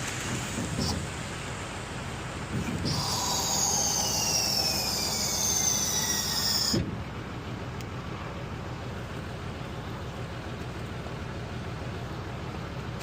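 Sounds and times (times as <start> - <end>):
high hissing whine: 0.0 - 7.4
low engine rumble: 0.0 - 13.0.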